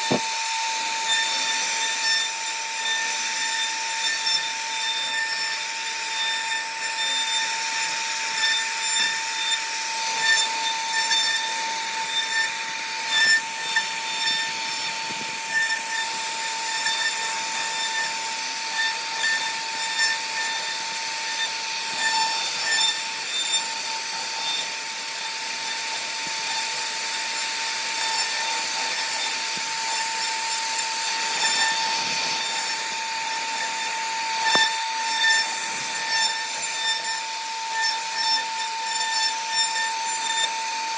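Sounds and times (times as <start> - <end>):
router spindle whining cutting wood: 0.0 - 40.9.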